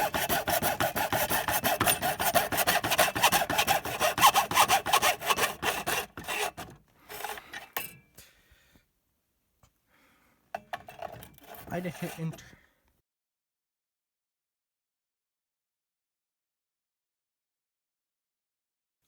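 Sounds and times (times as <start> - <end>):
hand saw rasping through plastic: 0.0 - 7.7, 11.4 - 12.5.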